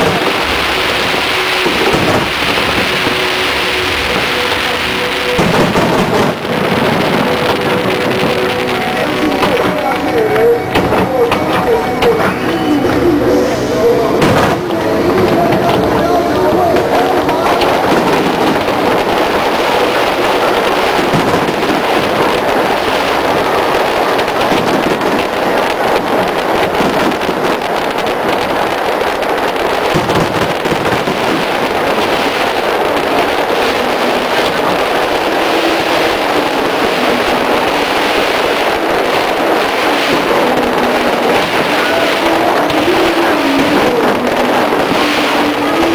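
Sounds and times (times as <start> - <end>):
fireworks crackling: 0.0 - 45.9.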